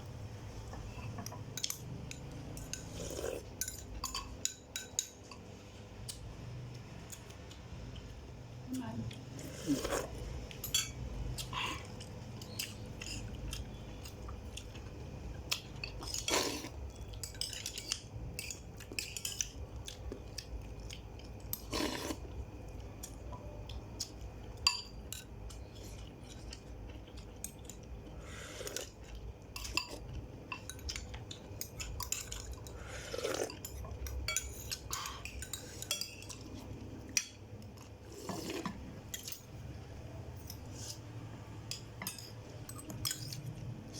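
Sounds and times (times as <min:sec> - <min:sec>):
utensils clinking on dishes: 0:00.8 - 0:05.5, 0:09.9 - 0:14.8, 0:15.5 - 0:20.7, 0:28.6 - 0:39.5, 0:41.7 - 0:43.9.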